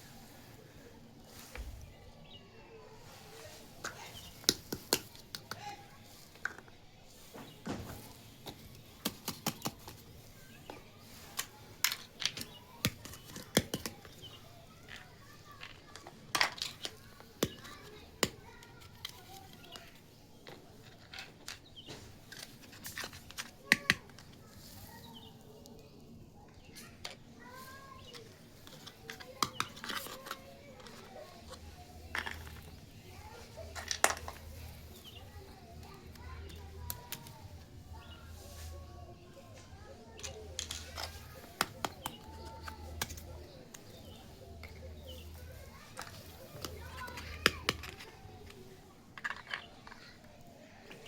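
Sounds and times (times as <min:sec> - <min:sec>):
plastic toy pieces clicking: 0:28.6 - 0:32.7, 0:49.2 - 0:50.1.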